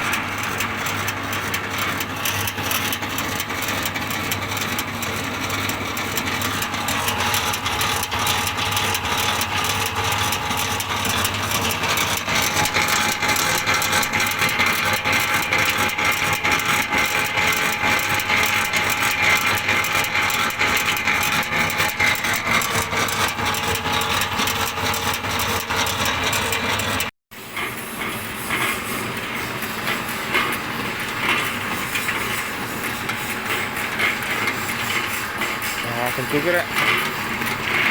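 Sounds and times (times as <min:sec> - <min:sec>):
dense mechanical rattle: 0:00.0 - 0:17.5
pellet mill motor hum: 0:00.0 - 0:37.9.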